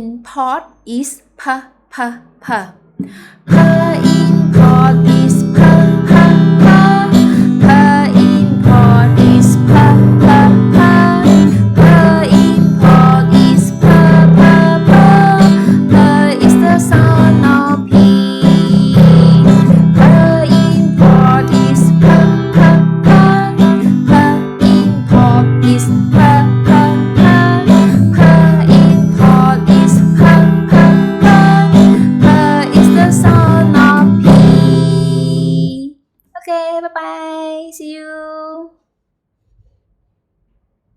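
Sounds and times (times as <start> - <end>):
acoustic guitar strumming: 3.4 - 35.7.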